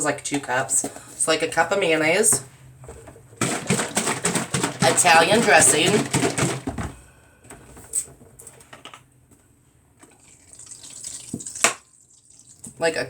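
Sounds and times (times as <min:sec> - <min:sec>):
liquid pouring from bottle: 0:10.1 - 0:12.7.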